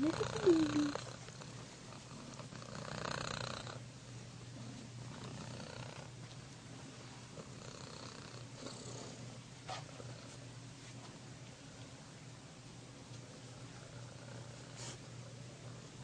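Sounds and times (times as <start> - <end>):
cat purring: 0.0 - 6.2, 7.2 - 10.5, 13.1 - 16.0.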